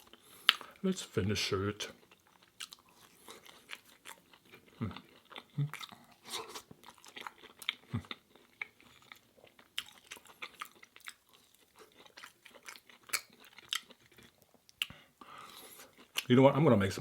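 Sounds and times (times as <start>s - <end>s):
person chewing crunchy food: 0.0s - 0.8s, 1.9s - 16.3s.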